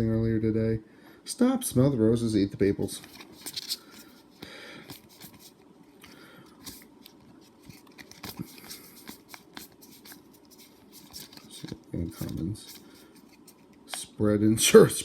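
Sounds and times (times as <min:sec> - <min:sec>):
cards rustling and clicking: 0:03.0 - 0:14.1.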